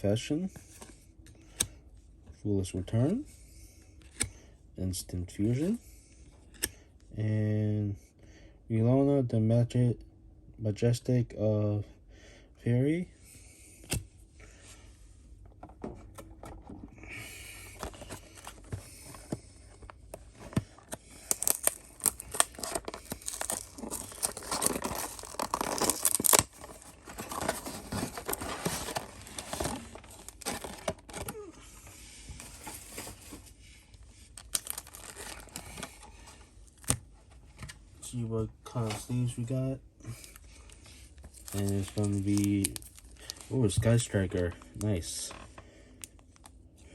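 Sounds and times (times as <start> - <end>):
card packaging tearing and crinkling: 19.8 - 31.5, 34.4 - 36.1, 41.2 - 45.2.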